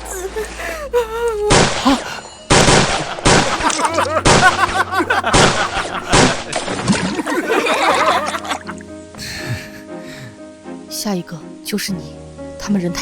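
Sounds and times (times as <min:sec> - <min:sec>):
wavering cries of distress: 0:00.0 - 0:02.4, 0:03.5 - 0:06.2, 0:07.2 - 0:08.8.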